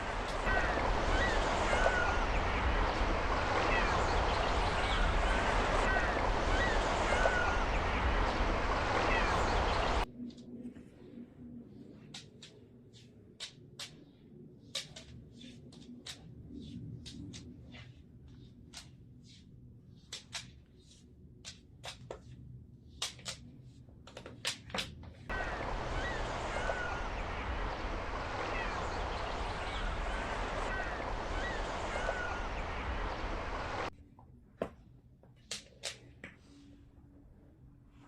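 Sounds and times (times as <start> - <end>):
loud steady hiss: 0.0 - 10.0, 25.3 - 33.9
turtle claws clicking on floor: 12.1 - 25.3.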